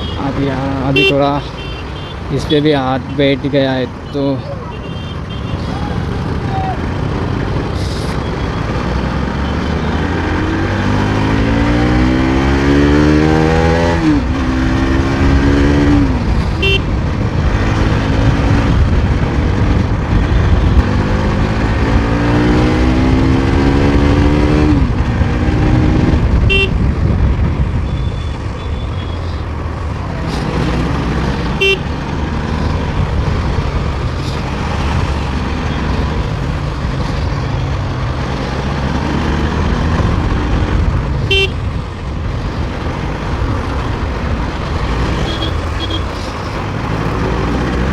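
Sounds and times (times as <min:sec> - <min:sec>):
wind and road rush: 0:00.0 - 0:47.9
motorcycle engine accelerating: 0:08.3 - 0:27.7, 0:29.8 - 0:47.9.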